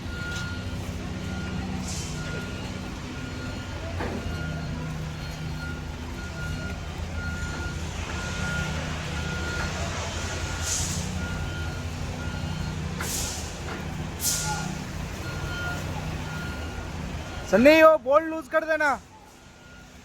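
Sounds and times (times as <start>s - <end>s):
heavy vehicle engine running: 0.0s - 20.0s
vehicle warning beeper: 0.0s - 20.0s
short air hisses: 10.6s - 11.2s, 13.0s - 14.8s.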